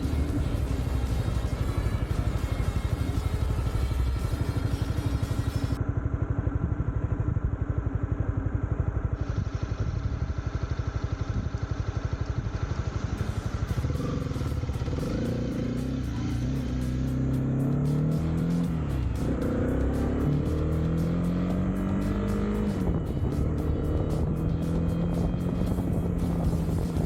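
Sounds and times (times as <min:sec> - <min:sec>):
motorcycle engine accelerating: 0:00.0 - 0:27.0.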